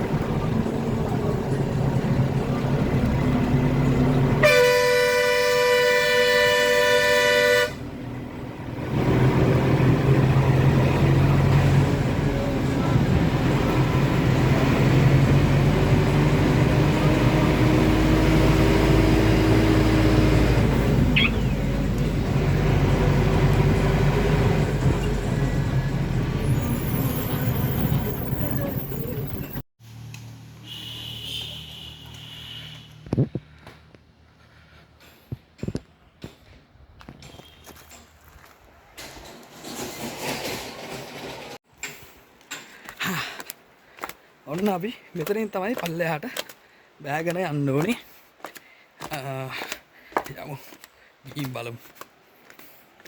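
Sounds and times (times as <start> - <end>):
vehicle horn: 4.4 - 7.9, 30.6 - 33.1, 37.3 - 37.8.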